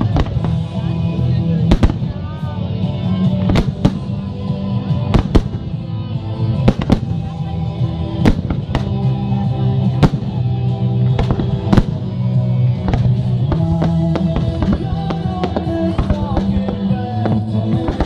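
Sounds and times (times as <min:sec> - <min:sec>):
fireworks bangs: 0:00.0 - 0:00.8, 0:01.6 - 0:02.5, 0:03.2 - 0:04.3, 0:04.9 - 0:05.9, 0:06.5 - 0:07.4, 0:08.2 - 0:09.1, 0:11.1 - 0:18.0
music with sustained chords: 0:00.0 - 0:18.0.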